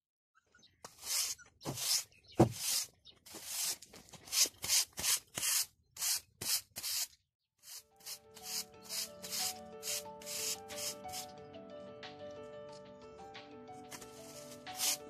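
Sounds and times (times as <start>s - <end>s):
broom sweeping: 0.9s - 6.2s, 6.8s - 11.3s, 13.9s - 15.0s.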